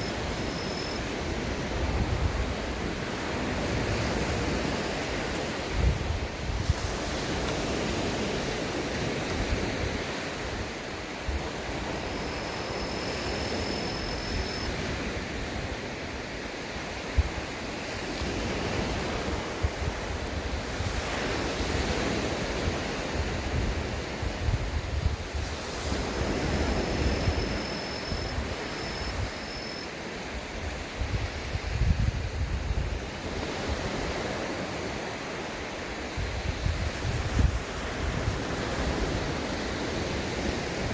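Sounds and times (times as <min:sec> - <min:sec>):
wind buffeting microphone: 0:00.0 - 0:15.9, 0:30.4 - 0:34.3, 0:36.1 - 0:40.9
sea waves washing onto beach: 0:00.0 - 0:40.9.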